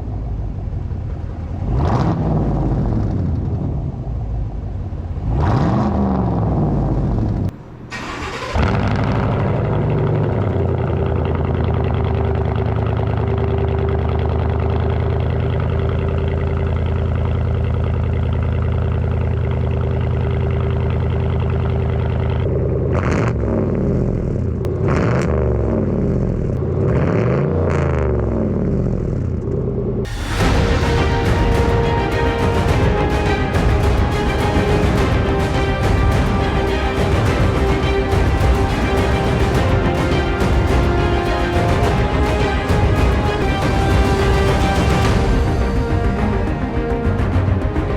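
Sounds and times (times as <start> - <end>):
pickup engine idling and revving: 0.0 - 34.0.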